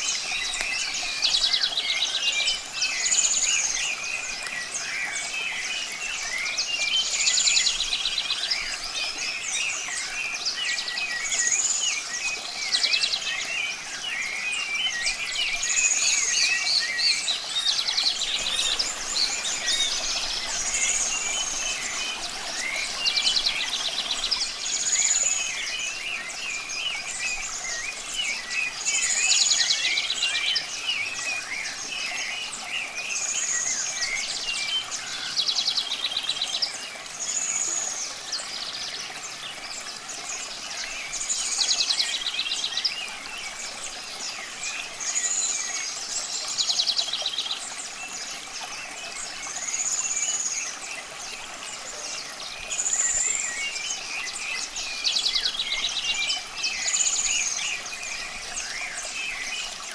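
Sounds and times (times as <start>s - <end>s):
faint steady hiss: 0.0s - 59.9s
birds chirping: 16.1s - 29.1s.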